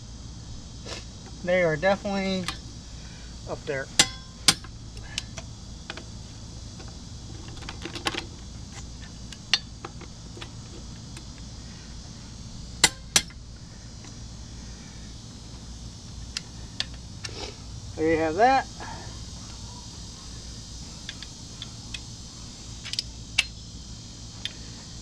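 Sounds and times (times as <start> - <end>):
torque wrench clicks: 21.0 - 22.1, 22.8 - 23.6.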